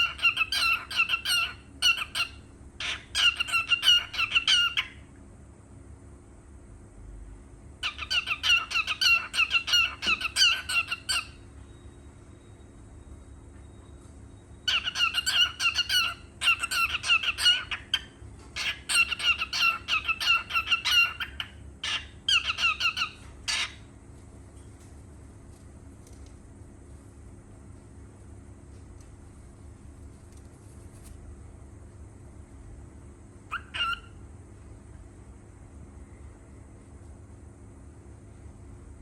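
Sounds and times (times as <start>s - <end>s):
cockatiel chirping: 0.0s - 5.0s, 7.8s - 11.4s, 14.7s - 23.8s, 33.5s - 34.2s.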